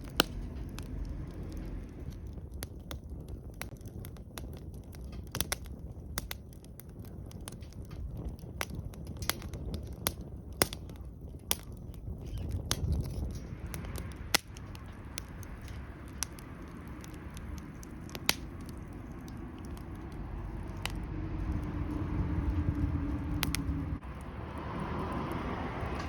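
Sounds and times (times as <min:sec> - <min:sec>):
low engine hum: 0:00.0 - 0:03.9, 0:13.1 - 0:26.0
wood fire crackling: 0:00.0 - 0:26.0.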